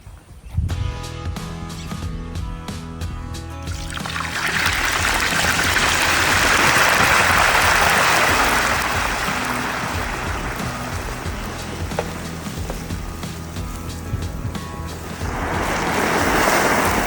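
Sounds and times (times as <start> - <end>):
background music: 0.7 - 17.0
hissing splashing noise: 3.7 - 17.0.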